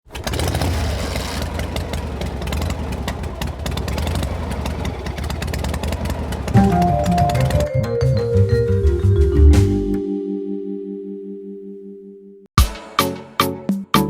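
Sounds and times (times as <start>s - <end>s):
auto-rickshaw engine running: 0.0s - 9.0s.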